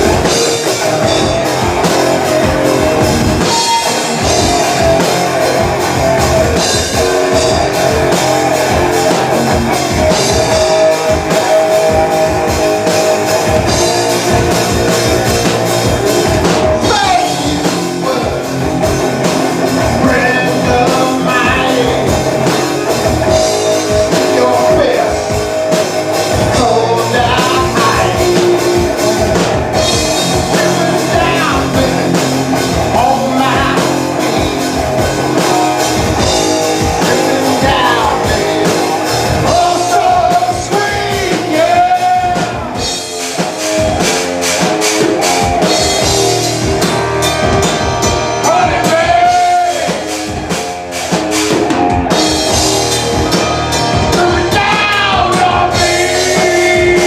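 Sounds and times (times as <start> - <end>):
bass guitar: 0.0 - 57.0
drum kit: 0.0 - 57.0
electric guitar: 0.0 - 57.0
person singing: 16.6 - 18.8, 19.8 - 22.6, 26.3 - 28.9, 30.0 - 43.1, 48.4 - 50.2, 53.1 - 57.0.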